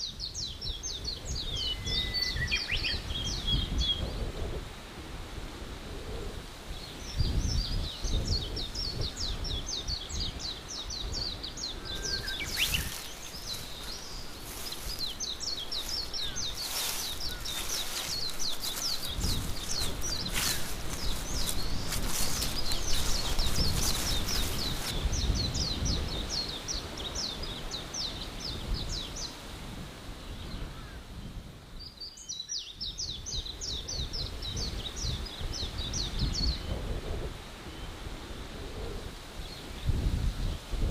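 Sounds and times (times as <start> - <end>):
low wind-like rumble: 0.0 - 40.9
rustling hiss: 1.2 - 31.2
birds chirping: 6.7 - 29.4.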